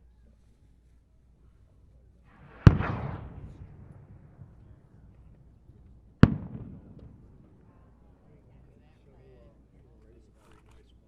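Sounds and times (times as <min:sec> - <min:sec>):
rising firework hiss: 0:02.3 - 0:05.4
firework bangs with echo: 0:02.3 - 0:07.5.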